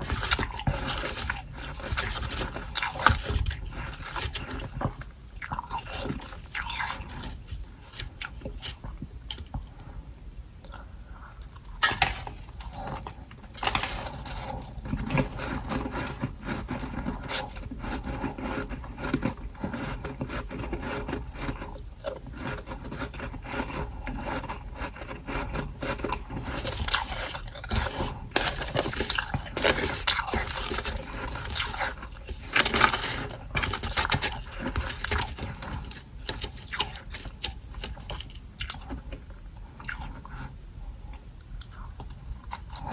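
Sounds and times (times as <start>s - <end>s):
frost being scraped: 0.0s - 4.7s, 13.6s - 37.9s.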